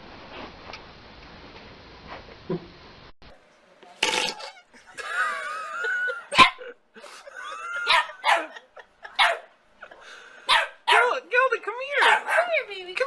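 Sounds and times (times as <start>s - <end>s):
dog barking: 6.3s - 6.6s, 7.8s - 9.5s, 10.4s - 11.2s, 11.9s - 12.7s.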